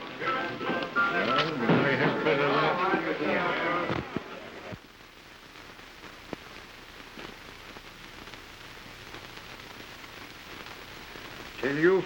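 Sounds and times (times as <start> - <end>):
film soundtrack hiss and crackle: 0.0 - 12.0.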